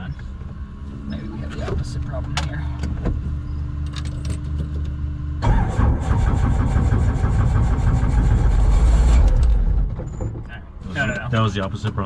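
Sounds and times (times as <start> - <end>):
helicopter engine starter cranking: 3.8 - 10.5.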